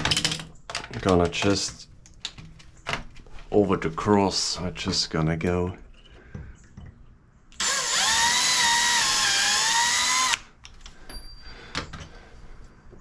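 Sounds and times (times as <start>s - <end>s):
power drill whine: 7.6s - 10.5s.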